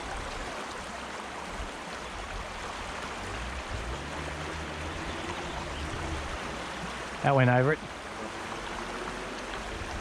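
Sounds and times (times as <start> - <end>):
creek flowing over rocks: 0.0 - 10.0.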